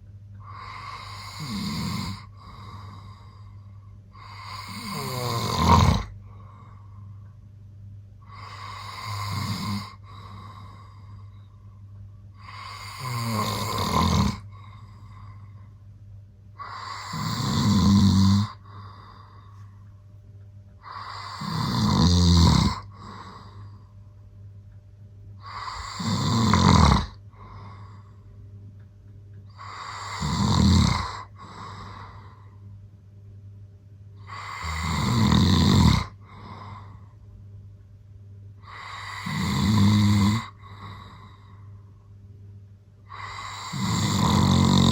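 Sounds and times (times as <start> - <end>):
man snoring: 0.4 - 6.7, 8.2 - 11.3, 12.4 - 15.7, 16.6 - 19.5, 20.8 - 23.8, 25.4 - 28.1, 29.5 - 32.6, 34.2 - 37.1, 38.6 - 41.6, 43.1 - 44.9.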